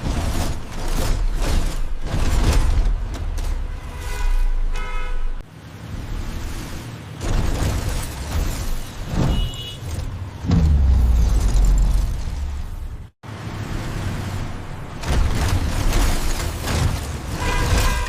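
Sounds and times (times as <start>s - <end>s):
horn honks: 3.6s - 5.4s, 9.1s - 10.0s, 17.3s - 18.0s.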